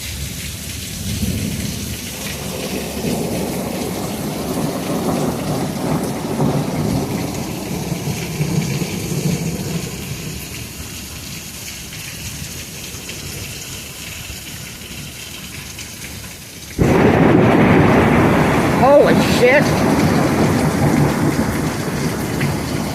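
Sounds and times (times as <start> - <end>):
heavy rain: 0.0 - 22.9
wind: 0.0 - 22.9
rolling thunder: 1.0 - 10.7, 16.8 - 22.9.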